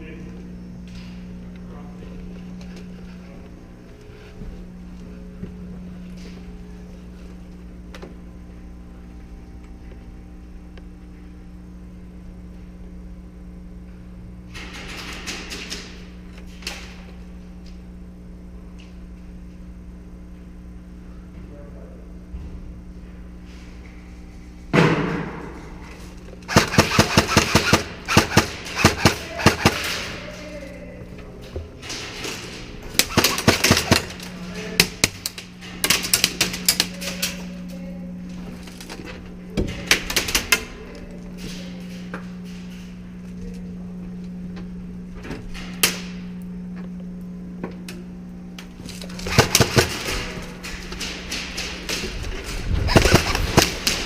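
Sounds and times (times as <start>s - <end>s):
steady low hum: 0.0s - 54.0s
airsoft gun crack: 26.5s - 30.2s, 49.2s - 52.2s, 52.8s - 54.0s
rapid airsoft gun shots: 26.5s - 30.2s, 33.0s - 34.2s, 49.2s - 50.4s, 52.8s - 54.0s.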